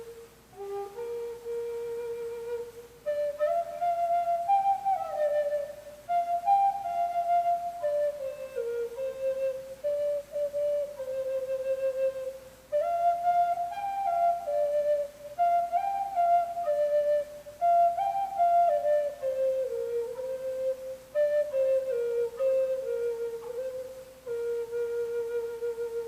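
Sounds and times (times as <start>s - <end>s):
flute playing slow melody: 0.0s - 26.0s.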